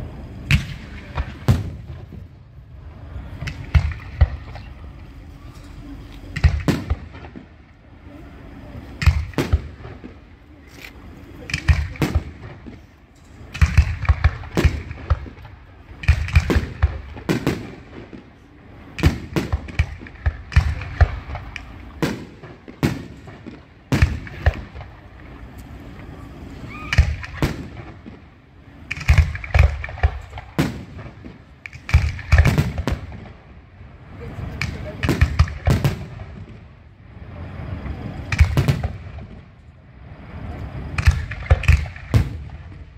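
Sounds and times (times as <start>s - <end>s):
firework crackling: 0.0s - 42.9s
fireworks bangs: 0.0s - 42.9s.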